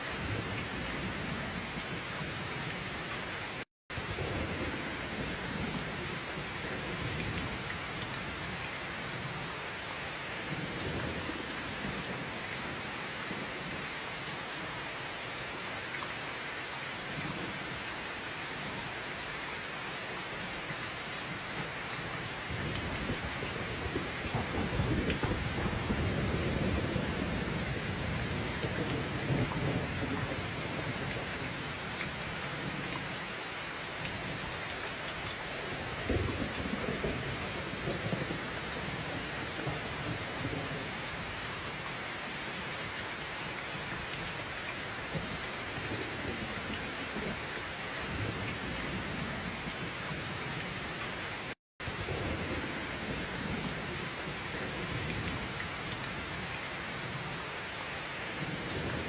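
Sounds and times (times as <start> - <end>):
heavy rain: 0.0 - 59.0
thunder rumbling: 22.5 - 31.1.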